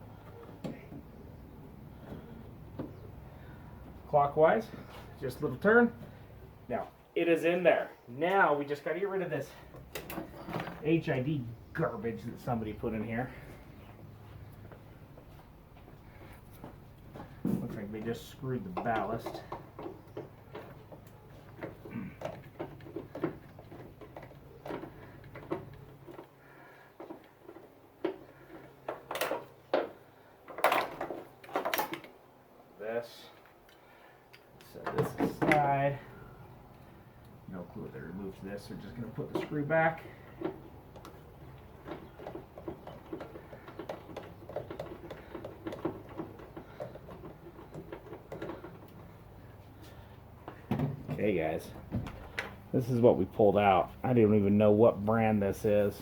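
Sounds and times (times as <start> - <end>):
light clicks and clatter: 38.8 - 53.0.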